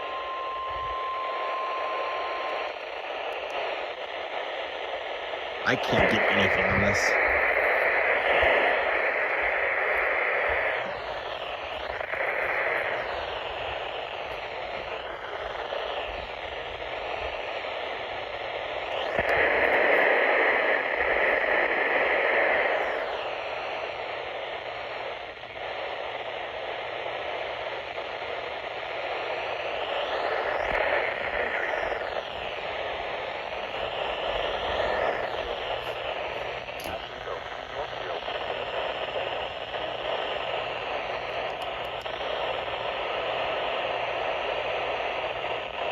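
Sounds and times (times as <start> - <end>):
faint sliding whistling tones: 0.0 - 2.7
radio static hiss: 0.0 - 45.9.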